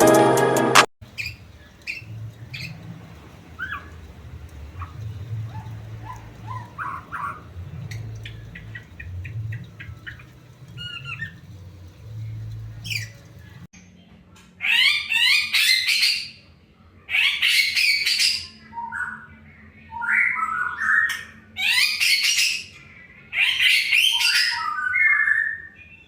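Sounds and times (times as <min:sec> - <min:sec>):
songbird chirping: 0:01.0 - 0:13.7
steady low hum: 0:01.0 - 0:13.7.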